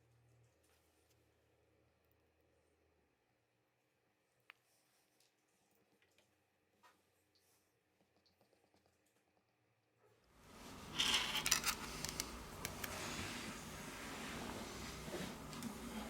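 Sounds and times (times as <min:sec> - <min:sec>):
small phone parts clicking: 0:10.9 - 0:13.0.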